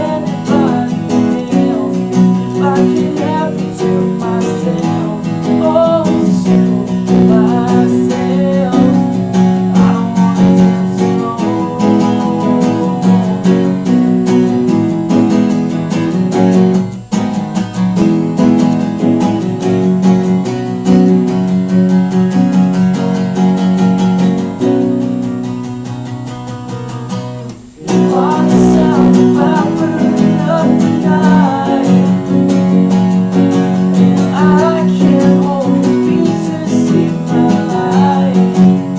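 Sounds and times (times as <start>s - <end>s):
person singing: 0.0s - 14.8s, 27.6s - 38.9s
strummed guitar: 0.0s - 38.9s.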